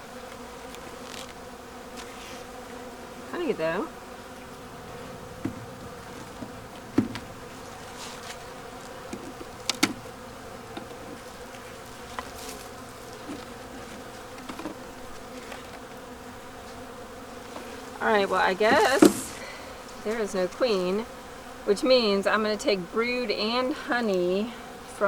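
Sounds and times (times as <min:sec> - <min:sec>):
honeybees buzzing: 0:00.0 - 0:25.0
sharp knocks: 0:05.4 - 0:07.3, 0:09.1 - 0:10.1.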